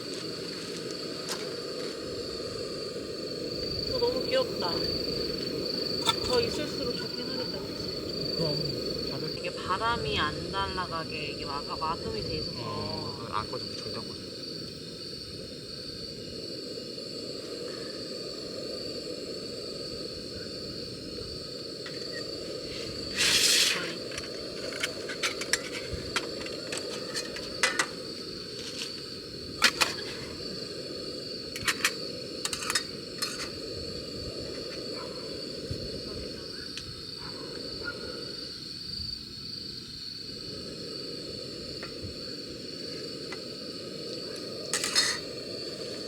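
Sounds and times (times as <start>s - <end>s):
utensils clinking on pot: 44.8s - 45.2s.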